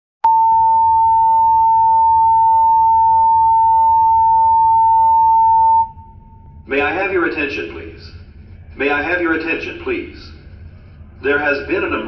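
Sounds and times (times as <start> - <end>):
fire alarm alert tone: 0.3 - 6.4.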